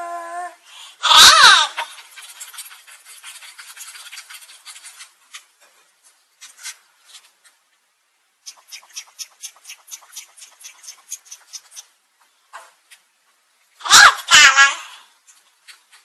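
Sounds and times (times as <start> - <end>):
rubbing and clicking handling noises: 1.8 - 7.9, 8.5 - 13.4, 15.2 - 16.0.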